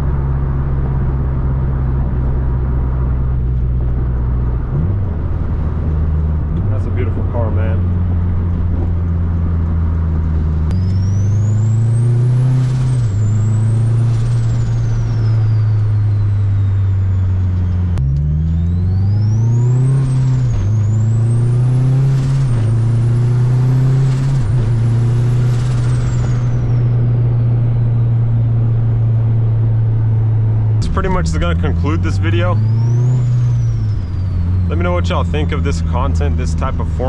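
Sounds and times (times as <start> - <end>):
car engine accelerating hard: 0.0 - 37.0
turbo whine: 0.0 - 37.0.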